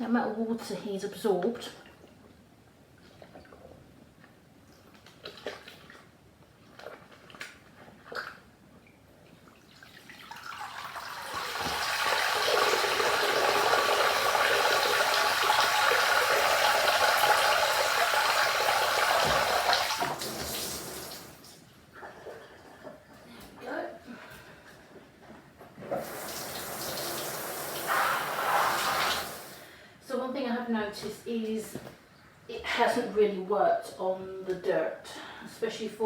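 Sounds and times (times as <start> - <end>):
water dripping and splashing: 4.7 - 22.4
bath tap water running: 9.6 - 21.6, 25.8 - 29.7.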